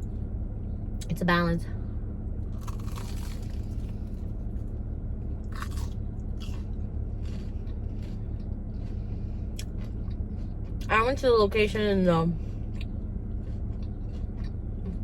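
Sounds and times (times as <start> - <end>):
steady low hum: 0.0 - 15.0
crunchy food chewing: 2.4 - 10.9, 12.6 - 15.0.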